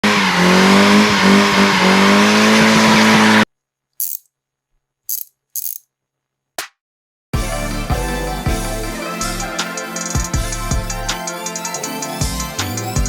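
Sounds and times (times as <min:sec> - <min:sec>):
car engine at high revs: 0:00.0 - 0:03.5.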